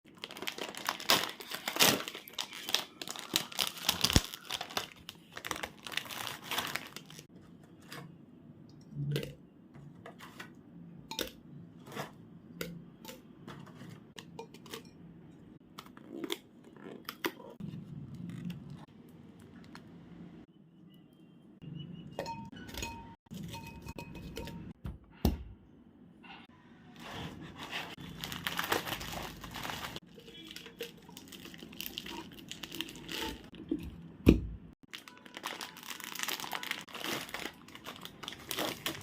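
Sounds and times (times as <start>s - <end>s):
plastic packaging crinkling: 0.1s - 7.3s, 27.6s - 33.8s, 34.8s - 39.0s.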